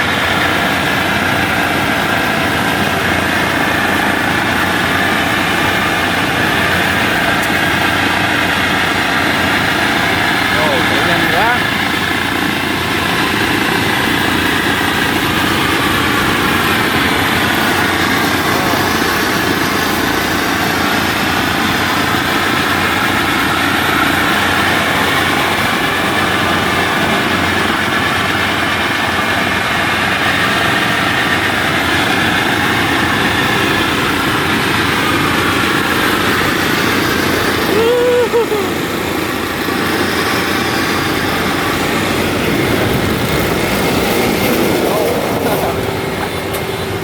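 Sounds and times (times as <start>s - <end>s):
combine harvester engine running: 0.0s - 47.0s
road and wind noise: 0.0s - 47.0s
rising and falling tone: 32.0s - 46.7s.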